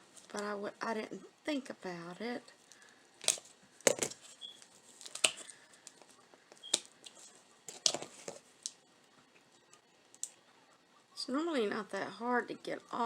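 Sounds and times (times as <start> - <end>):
ribbon rustling: 2.6 - 8.8.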